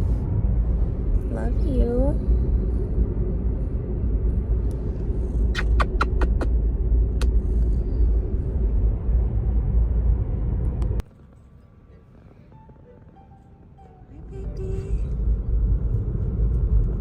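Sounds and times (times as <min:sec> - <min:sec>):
car cabin road rumble: 0:14.1 - 0:17.0.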